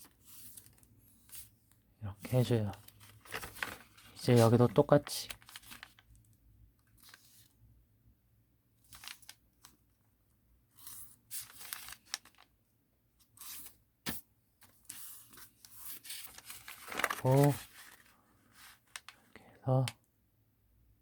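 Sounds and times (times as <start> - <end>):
paper folding and crinkling: 0.0 - 7.6, 8.8 - 10.0, 10.7 - 12.5, 13.2 - 20.0
sharp paper crack: 2.7 - 6.1, 8.8 - 9.8, 10.8 - 12.5, 14.9 - 19.2.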